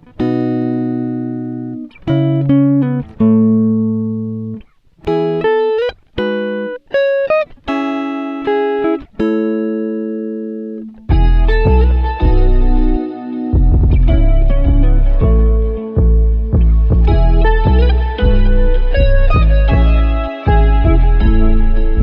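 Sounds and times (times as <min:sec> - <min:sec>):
slow plucked-string chords: 0:10.9 - 0:22.0.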